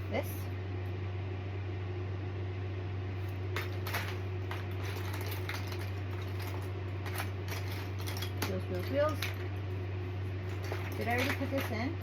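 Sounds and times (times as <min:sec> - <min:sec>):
steady low hum: 0:00.0 - 0:12.0
plastic pieces clicking and clattering: 0:03.6 - 0:09.5, 0:10.5 - 0:12.0.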